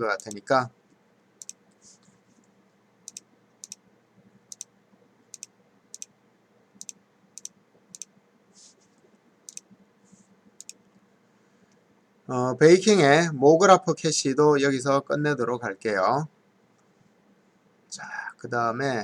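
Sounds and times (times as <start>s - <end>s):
computer mouse clicks: 0.2s - 0.4s, 1.4s - 2.5s, 3.1s - 3.8s, 4.5s - 6.1s, 6.8s - 8.1s, 9.5s - 9.7s, 10.6s - 10.9s.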